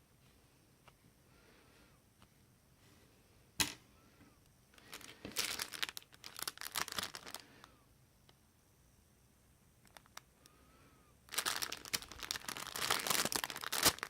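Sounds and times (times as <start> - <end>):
crinkling packaging rustle: 4.8 - 7.6, 9.8 - 10.3, 11.3 - 14.0.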